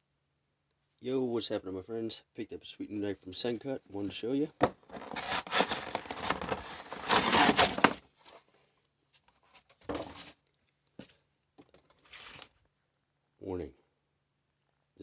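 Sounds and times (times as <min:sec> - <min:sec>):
rustling handling noise: 0:04.6 - 0:08.5, 0:09.1 - 0:10.4, 0:11.0 - 0:12.6.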